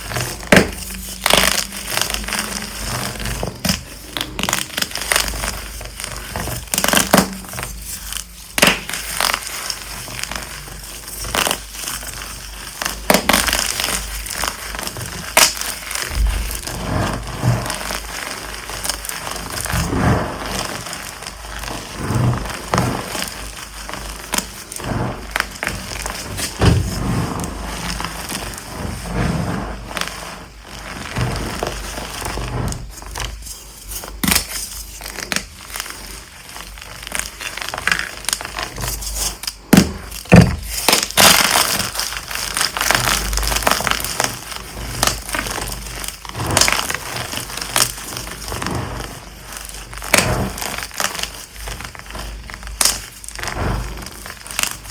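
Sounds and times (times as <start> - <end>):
chalk blocks crunching: 0.0 - 54.9.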